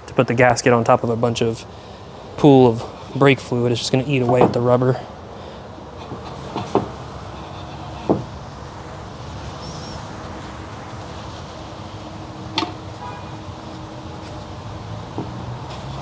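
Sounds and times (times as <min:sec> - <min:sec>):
steady background noise: 0:00.0 - 0:16.0
tools knocking and clicking: 0:12.6 - 0:12.8.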